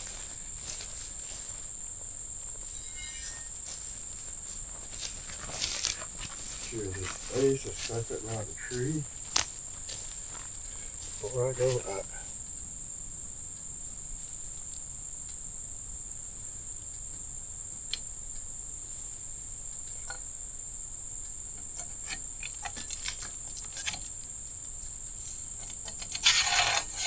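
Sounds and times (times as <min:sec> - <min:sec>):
scraping rustle: 0:00.0 - 0:01.8, 0:02.4 - 0:12.4, 0:21.6 - 0:24.2, 0:25.2 - 0:27.0
crickets trilling: 0:00.0 - 0:27.0.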